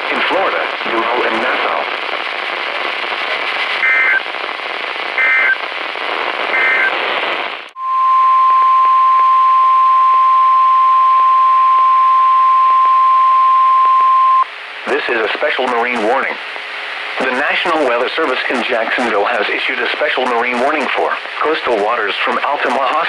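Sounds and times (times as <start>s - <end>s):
radio static hiss: 0.0s - 7.8s, 11.6s - 23.0s
steady weather radio alert tone: 0.0s - 23.0s
warbling data tones: 3.8s - 4.2s, 5.2s - 5.6s, 6.5s - 7.0s.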